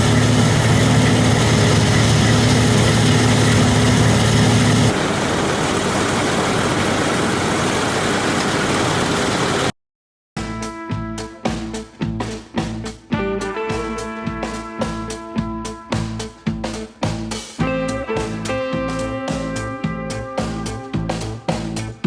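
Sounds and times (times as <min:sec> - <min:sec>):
farm machinery engine: 0:00.0 - 0:09.7.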